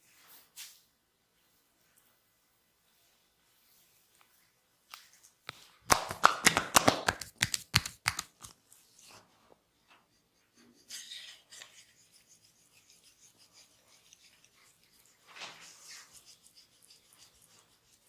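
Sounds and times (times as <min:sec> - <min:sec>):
hands cracking and smacking on body: 0:04.9 - 0:08.6.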